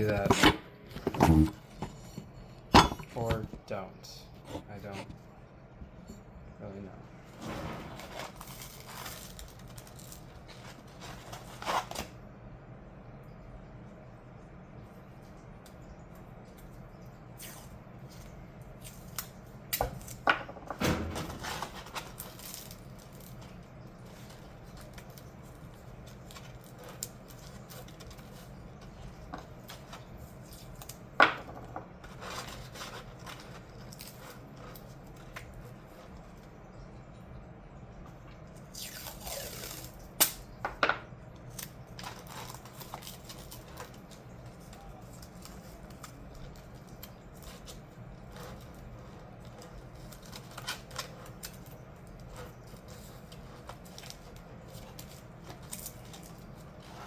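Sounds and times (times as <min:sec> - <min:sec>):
rustling scrape: 0:07.2 - 0:12.1, 0:32.0 - 0:34.8, 0:52.1 - 0:57.0.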